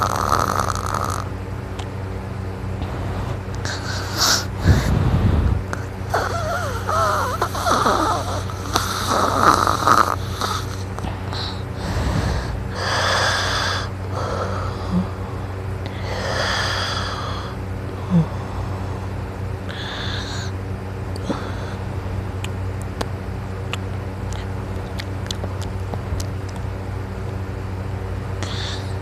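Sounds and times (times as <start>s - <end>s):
man snoring: 0.0s - 1.3s, 3.6s - 15.2s
steady low hum: 0.0s - 29.0s.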